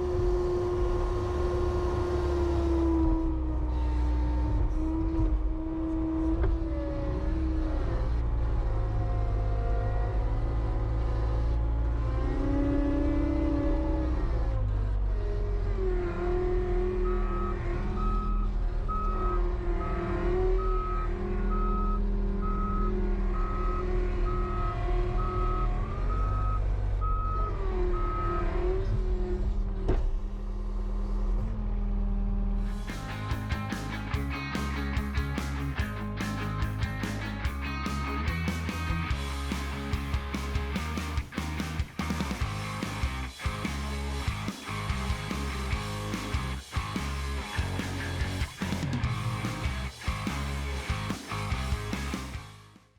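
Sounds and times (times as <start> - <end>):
diesel engine under load: 0.1 - 32.9
reversing alarm beeping: 17.1 - 20.0, 20.6 - 28.4.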